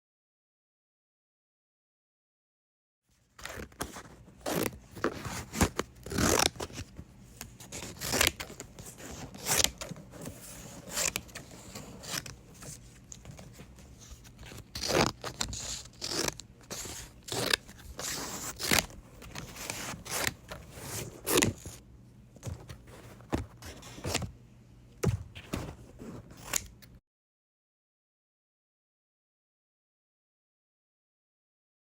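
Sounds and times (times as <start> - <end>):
thick paper being cut: 3.4 - 6.8, 7.6 - 13.4, 14.0 - 21.8
scissor snips: 14.4 - 21.8, 26.4 - 26.8.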